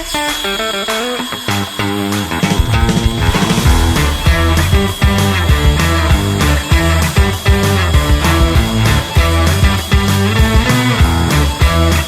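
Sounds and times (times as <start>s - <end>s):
rock music: 0.0s - 12.0s
bass line: 2.4s - 10.5s
drum beat: 2.4s - 10.7s.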